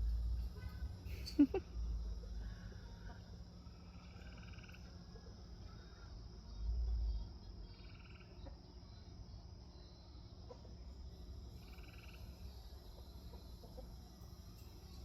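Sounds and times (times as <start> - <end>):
insects chirring: 0.0 - 15.0
frog trilled calls: 3.8 - 4.9, 7.7 - 8.5, 11.6 - 12.3.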